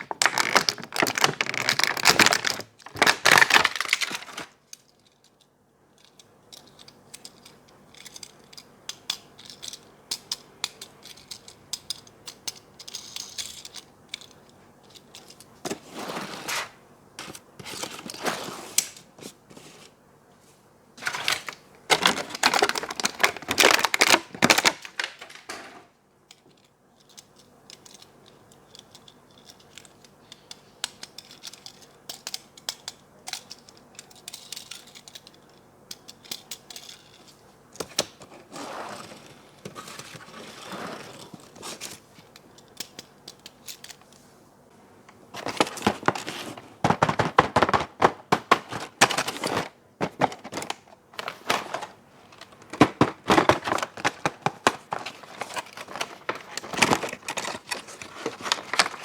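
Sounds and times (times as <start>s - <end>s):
packaging rustling and tearing: 0.0s - 4.6s, 21.0s - 25.8s, 45.3s - 59.0s.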